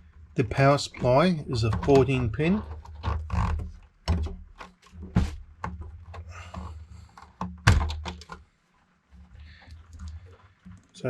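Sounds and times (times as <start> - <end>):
plastic and metal clicks and knocks: 0.9 - 8.4.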